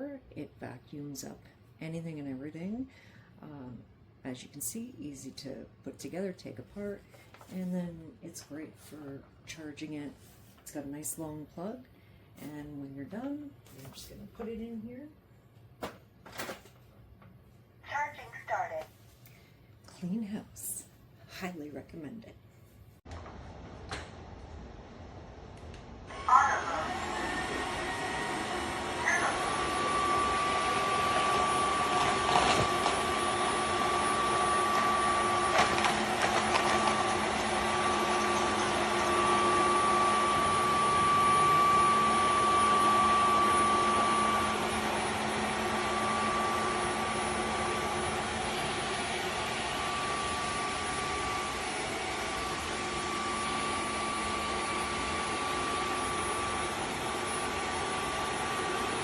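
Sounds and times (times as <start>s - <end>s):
vacuum mop motor whine: 25.2s - 59.0s.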